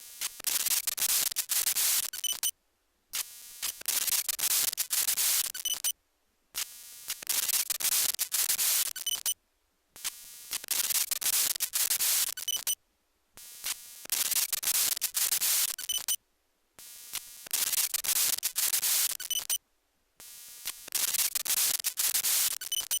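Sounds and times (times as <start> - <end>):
short buzzing bleep: 2.2 - 2.5, 9.0 - 9.3, 12.4 - 12.8, 15.9 - 16.2, 19.2 - 19.6.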